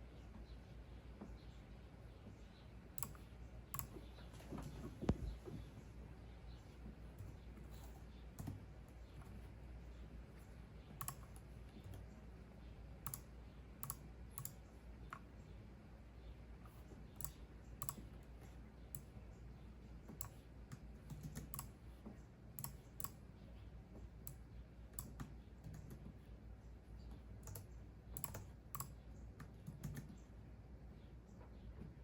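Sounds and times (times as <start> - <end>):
keyboard typing: 3.0 - 5.4, 7.1 - 12.3, 13.0 - 15.3, 16.7 - 19.2, 20.0 - 21.9, 22.5 - 23.2, 25.0 - 26.2, 27.0 - 30.3.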